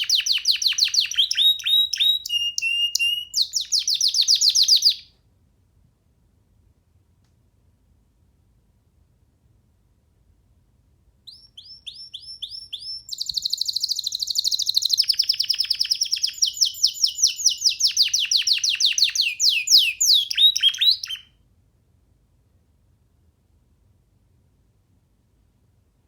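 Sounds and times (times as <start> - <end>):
canary singing: 0.0 - 5.1, 11.3 - 21.3.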